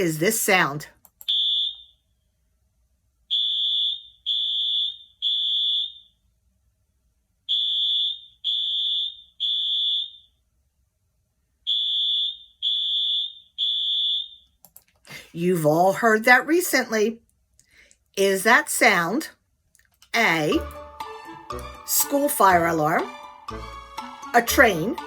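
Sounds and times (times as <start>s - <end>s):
fire alarm beeping: 1.2s - 2.0s, 3.3s - 6.2s, 7.5s - 10.4s, 11.7s - 14.6s.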